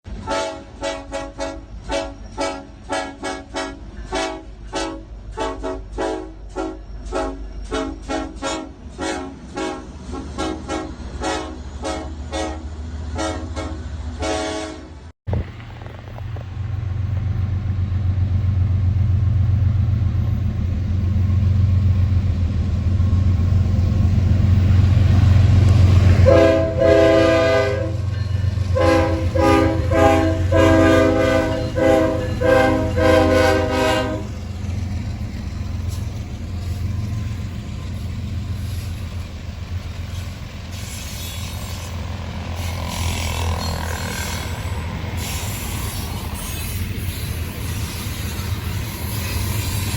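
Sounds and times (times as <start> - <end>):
diesel locomotive rumbling: 0.0 - 49.9
train air horn blasts: 0.1 - 15.1, 25.9 - 34.6.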